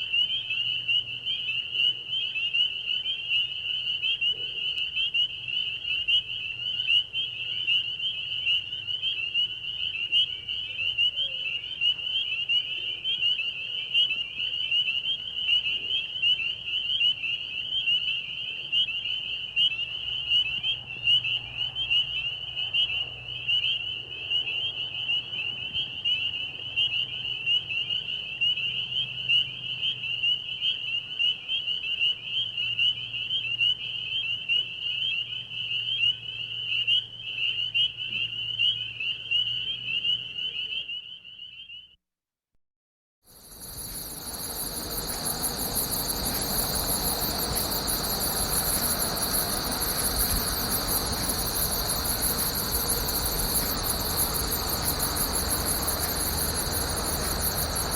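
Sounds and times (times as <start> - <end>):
crickets chirping: 43.3 - 57.9.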